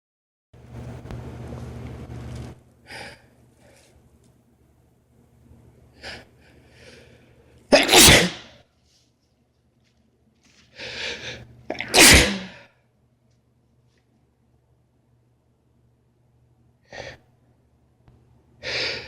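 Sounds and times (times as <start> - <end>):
man sneezing: 7.7 - 8.5, 11.7 - 12.6.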